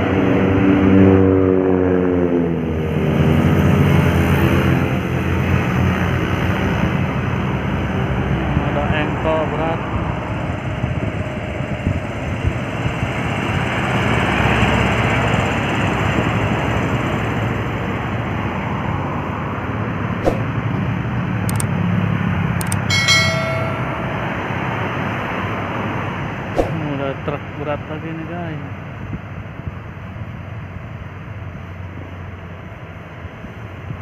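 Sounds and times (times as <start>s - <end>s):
heavy traffic rumble: 0.0s - 34.0s.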